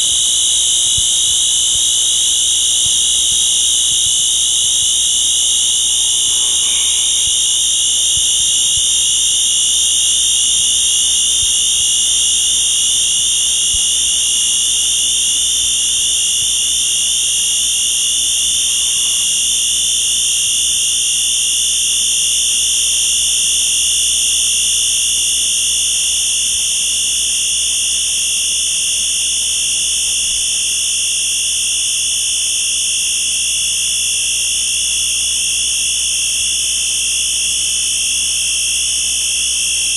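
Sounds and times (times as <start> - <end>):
high-pitched electronic drone: 0.0 - 23.9.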